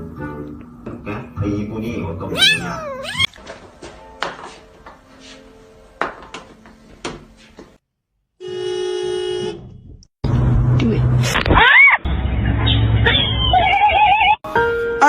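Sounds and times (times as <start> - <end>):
cat meowing: 2.3 - 3.4.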